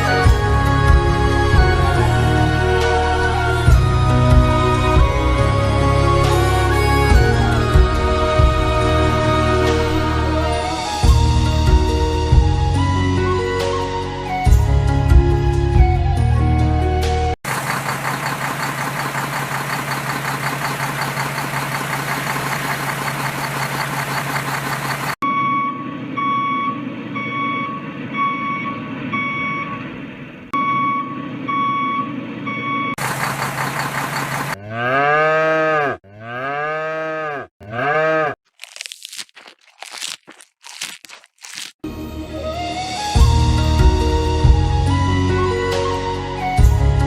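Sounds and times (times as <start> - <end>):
engine idling with knock: 17.4 - 25.2, 33.0 - 34.6
cow mooing: 34.6 - 38.4
crunching crackling sounds: 38.4 - 41.8.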